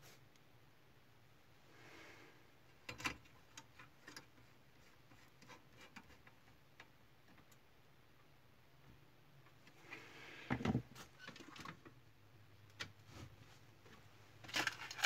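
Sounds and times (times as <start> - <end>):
soft rustle: 13.0 - 15.0.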